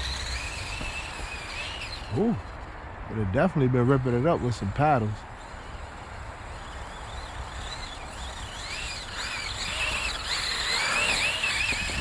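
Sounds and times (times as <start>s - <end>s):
electric motor whining: 0.0s - 2.6s, 5.3s - 12.0s.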